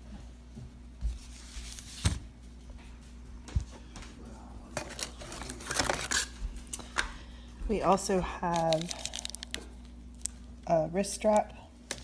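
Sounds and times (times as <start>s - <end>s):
packaging crinkling: 4.8s - 6.4s, 8.4s - 10.5s.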